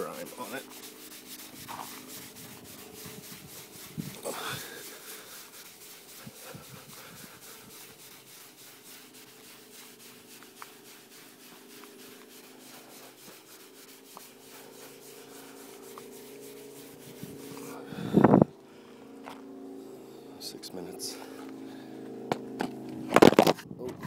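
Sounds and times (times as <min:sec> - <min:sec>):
cloth pad rubbing plastic: 0:00.0 - 0:18.5.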